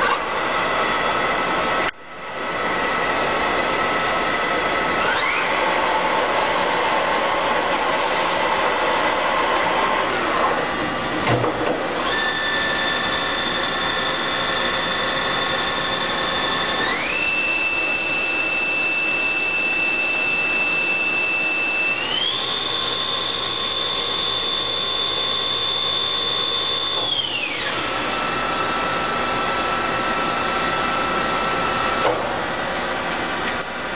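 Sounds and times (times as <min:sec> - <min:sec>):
machine spindle whining: 0:03.8 - 0:11.1, 0:11.8 - 0:32.2.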